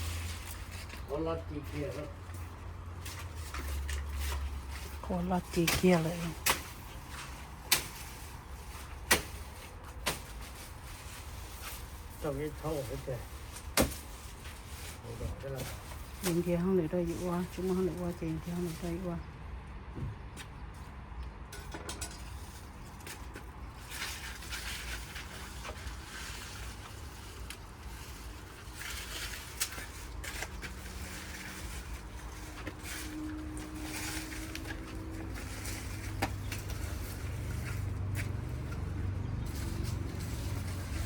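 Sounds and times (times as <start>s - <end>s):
corn leaves and stalks rustling: 0.0s - 19.2s, 22.3s - 41.0s
stalk snapping: 5.5s - 8.2s, 9.0s - 10.4s.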